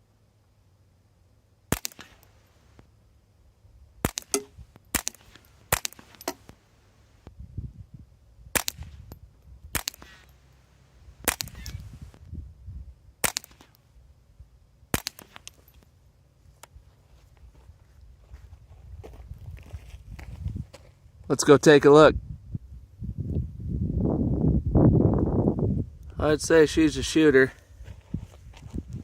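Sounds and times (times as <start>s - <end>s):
suppressed rifle shots: 1.7s - 2.4s, 4.0s - 6.6s, 8.5s - 10.4s, 11.2s - 12.0s, 13.2s - 13.8s, 14.9s - 15.6s.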